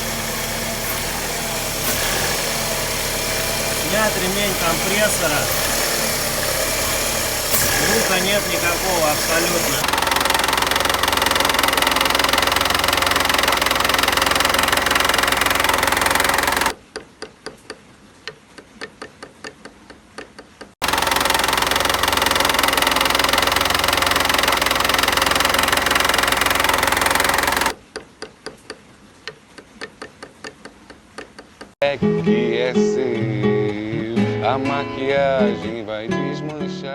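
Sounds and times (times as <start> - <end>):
engine idling with ticks: 0.0 - 16.8, 20.2 - 28.3
engine knocking rattle: 0.0 - 16.8, 20.8 - 27.8.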